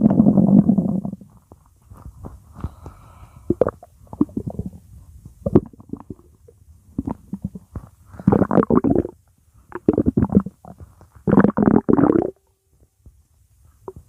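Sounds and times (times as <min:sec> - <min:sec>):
stomach growling and gurgling: 0:00.0 - 0:01.6, 0:03.5 - 0:12.4.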